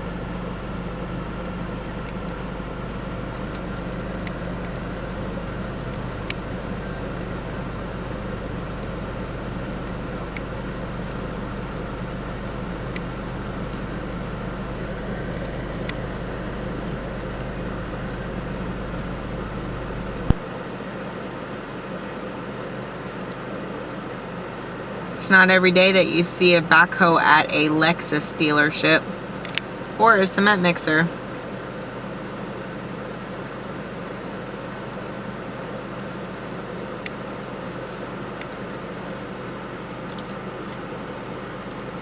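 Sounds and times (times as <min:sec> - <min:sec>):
vehicle engine idling: 0:00.0 - 0:20.6.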